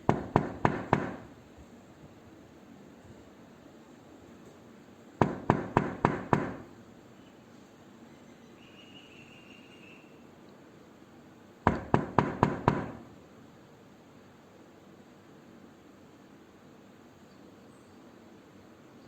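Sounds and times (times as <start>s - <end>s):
quick sharp knocks on door: 0.1s - 1.3s, 5.2s - 6.7s, 11.7s - 13.1s.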